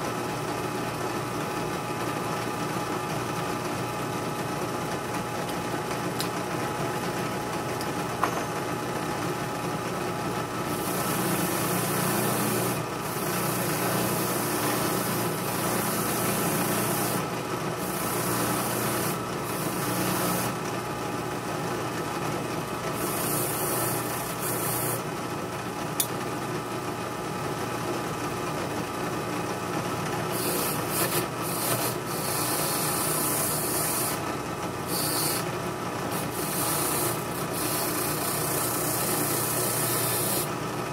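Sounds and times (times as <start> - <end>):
drill press motor humming: 2.4 - 26.3, 30.2 - 40.9
metal rasping on spinning wheel: 30.4 - 34.2, 34.9 - 35.4, 36.1 - 40.5.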